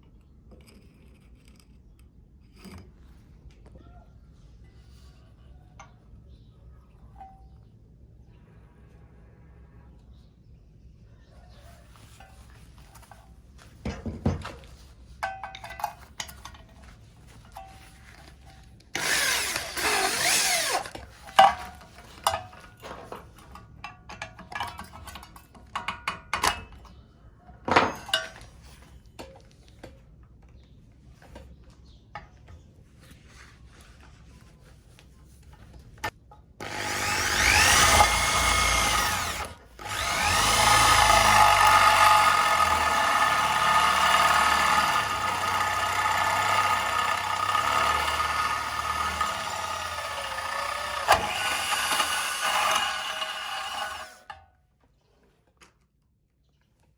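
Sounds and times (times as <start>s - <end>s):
tools clicking and knocking: 13.8s - 16.8s, 19.0s - 26.9s
electric drill running: 19.0s - 21.0s, 36.6s - 54.3s.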